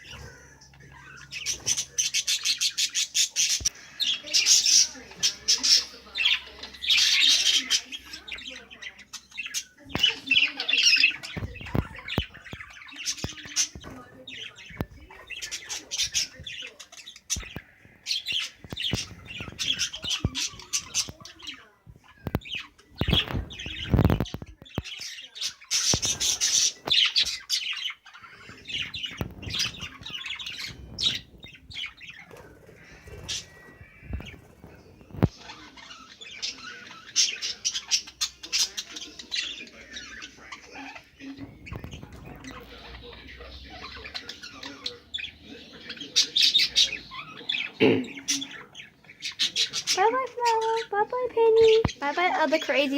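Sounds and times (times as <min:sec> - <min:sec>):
budgerigars chattering and squawking: 0:00.0 - 0:52.9.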